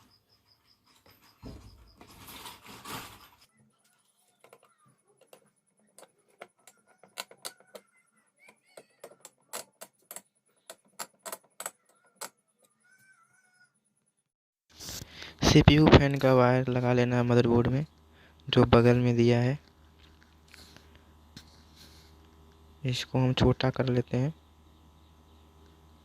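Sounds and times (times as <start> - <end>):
clicks of small hard parts: 4.4 - 12.4.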